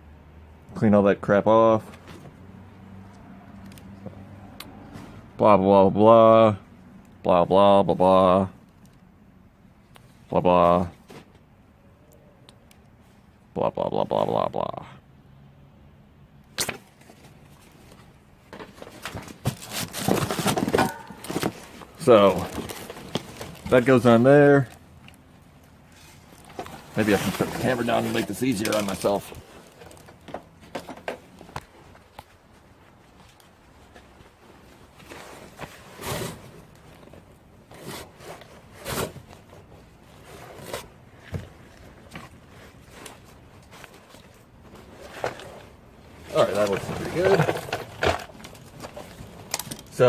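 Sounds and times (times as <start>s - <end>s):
hands scraping metal parts: 19.6s - 24.8s.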